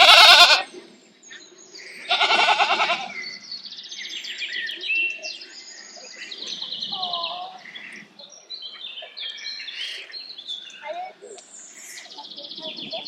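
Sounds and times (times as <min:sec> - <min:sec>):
goat bleat: 0:00.0 - 0:00.7, 0:02.1 - 0:03.2
songbirds trilling: 0:00.0 - 0:13.0.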